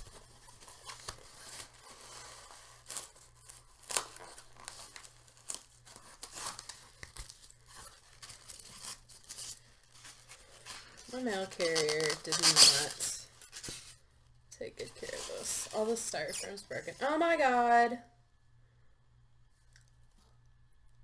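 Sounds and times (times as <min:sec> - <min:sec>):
styrofoam and wrapping crinkling: 0:00.0 - 0:14.0, 0:14.8 - 0:17.3.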